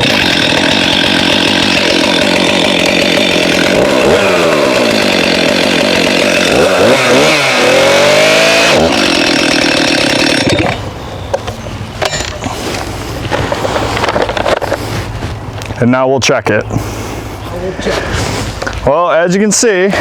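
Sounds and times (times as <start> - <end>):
chainsaw running at high revs: 0.0 - 10.8.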